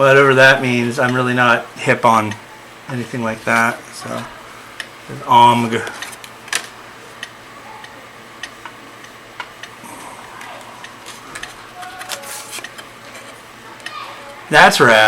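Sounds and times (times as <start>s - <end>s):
paper and plastic rustling: 11.0s - 13.4s.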